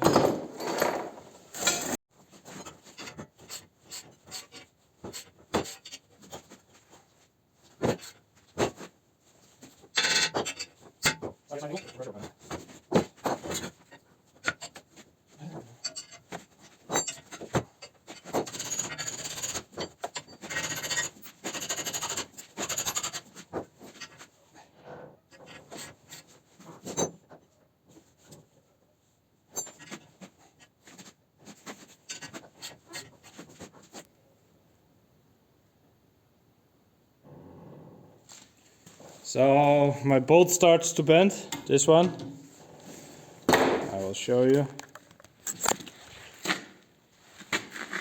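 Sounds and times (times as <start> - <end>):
metal tool clicks and knocks: 44.7 - 45.8.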